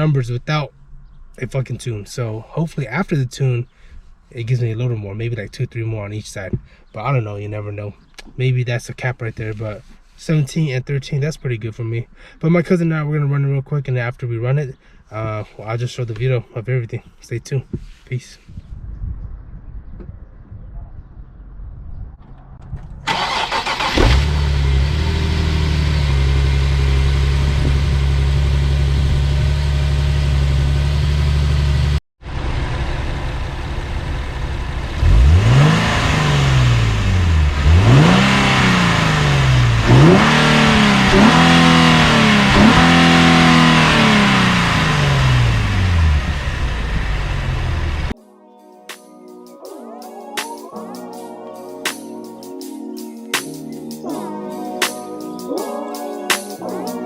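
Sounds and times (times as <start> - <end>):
starter motor cranking: 23.1 - 25.6
car engine idling: 23.1 - 48.1
car engine revving: 23.1 - 48.1.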